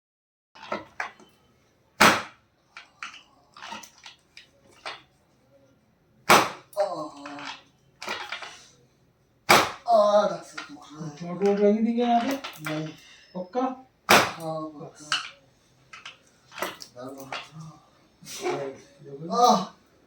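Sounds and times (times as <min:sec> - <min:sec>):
loud sharp cracks: 0:02.0 - 0:02.4, 0:06.3 - 0:06.7, 0:09.5 - 0:09.9, 0:14.1 - 0:14.5.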